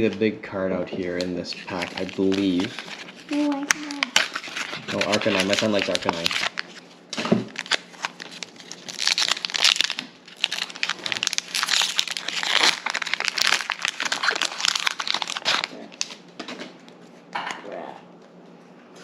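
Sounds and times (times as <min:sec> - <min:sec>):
foil wrapper crinkling and tearing: 0:01.5 - 0:06.8, 0:07.5 - 0:16.2.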